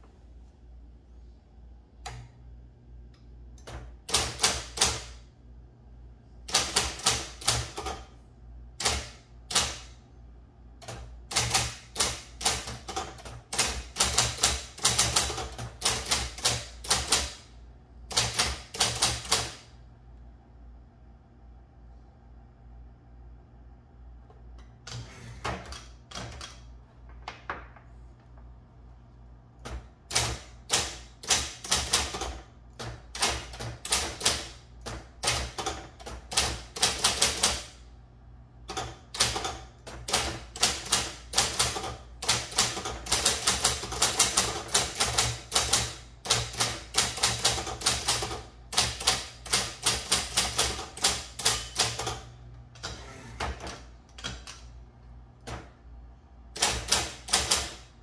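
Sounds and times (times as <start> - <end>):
steady low hum: 0.0 - 35.2
electric typewriter key strikes: 3.6 - 5.2, 6.5 - 8.1, 8.8 - 9.9, 10.8 - 17.4, 18.1 - 19.7, 29.6 - 37.7, 56.6 - 57.9.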